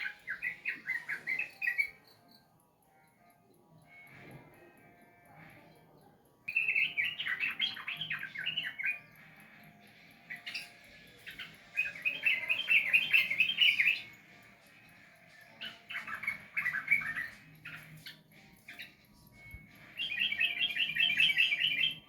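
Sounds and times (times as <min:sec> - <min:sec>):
bulbul chattering song: 0:00.0 - 0:22.0.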